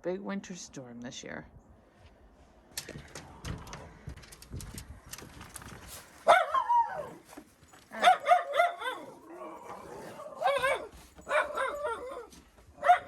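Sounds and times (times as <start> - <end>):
dog barking: 6.2 - 7.2, 7.9 - 13.0.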